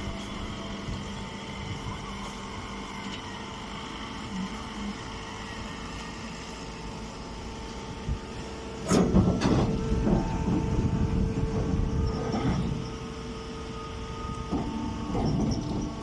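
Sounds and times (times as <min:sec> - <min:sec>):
baler mechanical hum: 0:00.0 - 0:16.0.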